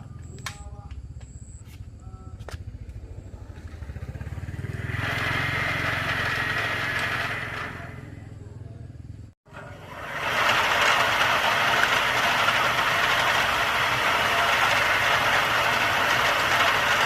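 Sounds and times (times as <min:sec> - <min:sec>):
small engine running: 0:02.7 - 0:17.0
hissing grinding noise: 0:03.7 - 0:08.3, 0:09.5 - 0:17.0.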